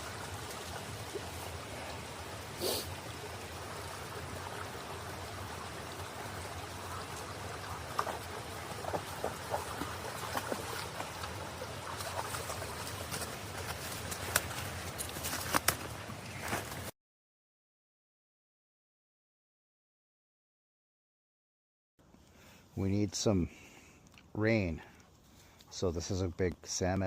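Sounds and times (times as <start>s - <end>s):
stream trickling: 0.0s - 16.8s.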